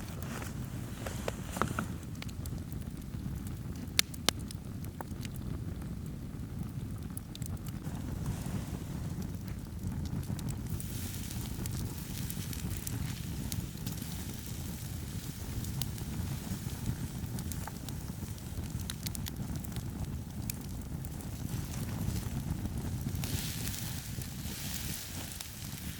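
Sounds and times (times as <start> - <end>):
fire low rumble: 0.0 - 25.9
firewood crackling and popping: 0.0 - 25.9.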